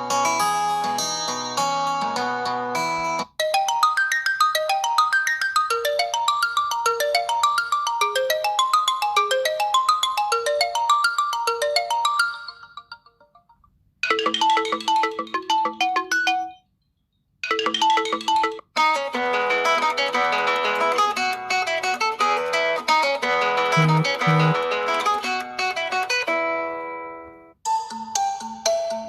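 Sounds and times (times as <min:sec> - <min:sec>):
ringtone melody of quick notes: 0:03.4 - 0:16.6, 0:23.8 - 0:24.6
ringtone with repeating low note: 0:23.8 - 0:24.6.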